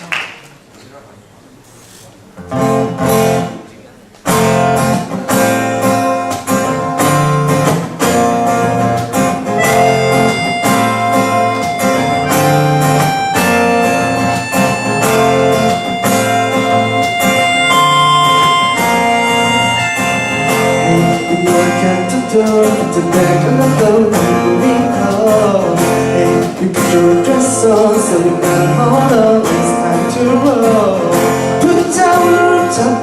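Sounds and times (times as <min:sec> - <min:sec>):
acoustic guitar strumming: 0:02.4 - 0:03.6, 0:04.3 - 0:33.0
held notes: 0:06.7 - 0:31.0.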